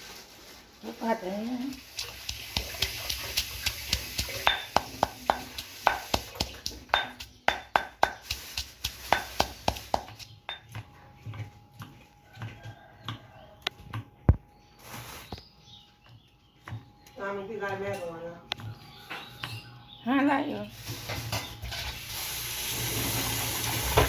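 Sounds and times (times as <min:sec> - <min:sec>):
steady frying hiss: 0:00.0 - 0:10.2, 0:20.7 - 0:24.0.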